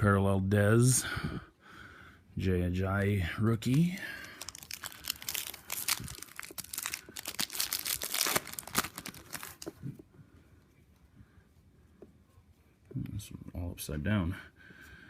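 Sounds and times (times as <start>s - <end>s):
wrapper tearing and crinkling: 3.6s - 9.7s.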